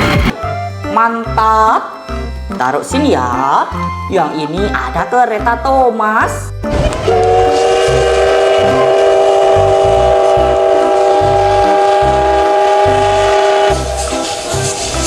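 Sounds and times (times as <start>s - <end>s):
low rhythmic pulse: 0.0s - 5.8s, 6.4s - 15.0s
train whistle blowing: 7.0s - 15.0s.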